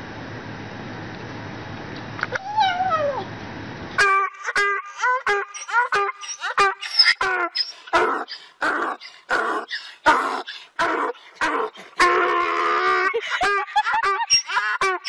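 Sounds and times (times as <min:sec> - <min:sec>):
dog drawn-out call: 0:04.0 - 0:12.5
dog barking: 0:07.9 - 0:11.8.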